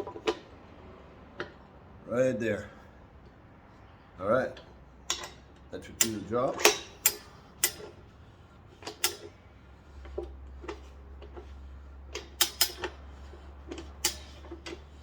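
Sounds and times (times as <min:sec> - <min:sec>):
metal tools clicking on wheel rim: 0:04.5 - 0:08.1, 0:08.8 - 0:15.0.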